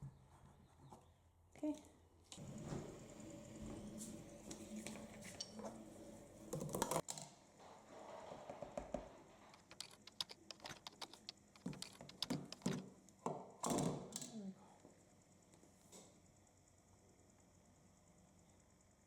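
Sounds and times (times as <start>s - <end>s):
small hard objects clicking: 9.5s - 12.8s.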